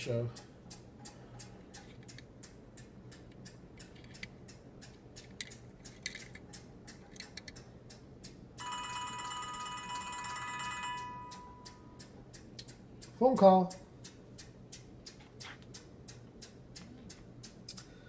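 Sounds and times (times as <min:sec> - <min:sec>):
model car clicking when handled: 0:05.2 - 0:06.4
phone ringtone: 0:08.6 - 0:12.0.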